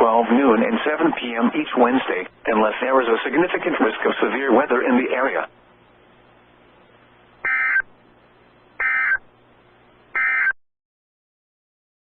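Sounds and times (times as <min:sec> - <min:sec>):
faint radio hiss: 0:00.0 - 0:10.4
two-tone digital screech bursts: 0:07.5 - 0:07.8, 0:08.8 - 0:09.2.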